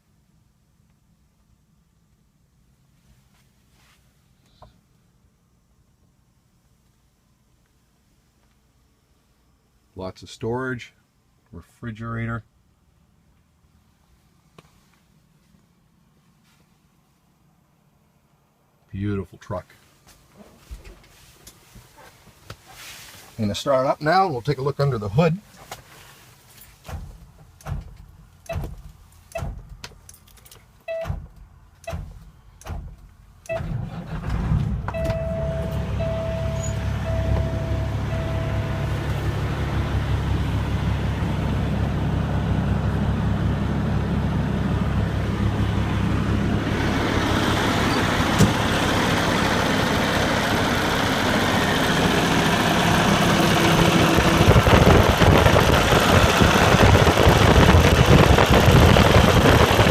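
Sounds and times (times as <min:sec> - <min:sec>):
beeping tone: 0:35.0 - 0:39.0
diesel truck engine idling: 0:35.0 - 0:59.9.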